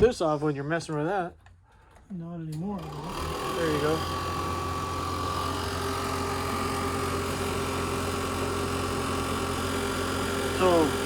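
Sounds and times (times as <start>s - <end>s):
heater blower motor humming: 2.6s - 11.0s.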